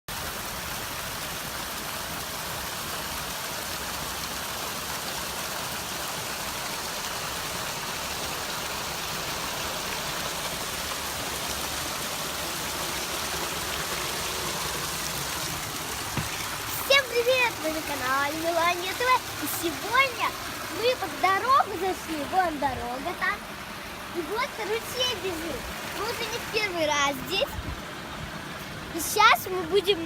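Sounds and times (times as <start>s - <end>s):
stream rushing water: 0.1s - 30.0s.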